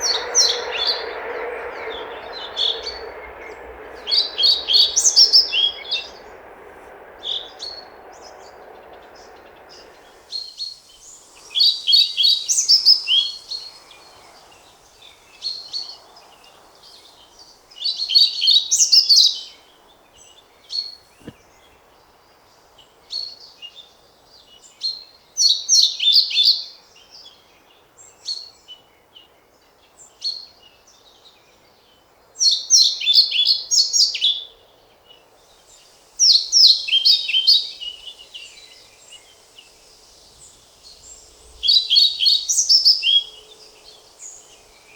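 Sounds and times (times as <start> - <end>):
flycatcher singing: 0.0 - 19.4, 35.5 - 44.9.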